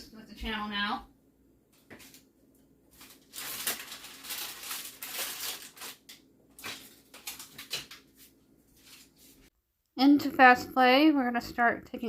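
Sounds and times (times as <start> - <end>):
crinkling rustling handling: 2.9 - 9.5.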